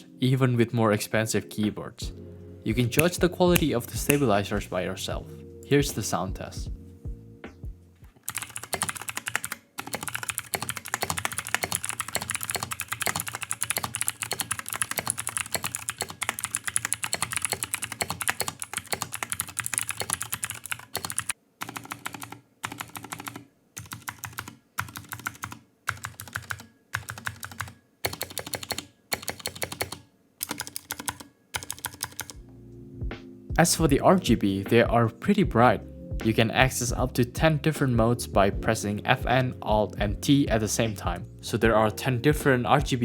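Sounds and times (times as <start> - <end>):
clicky keyboard typing: 2.9 - 4.4, 8.2 - 32.4.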